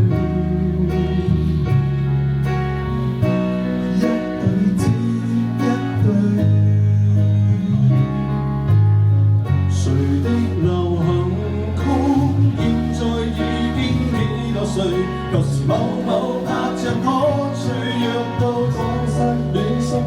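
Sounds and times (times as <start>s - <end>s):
held bass notes: 0.0s - 20.0s
strummed guitar chords: 0.0s - 20.0s.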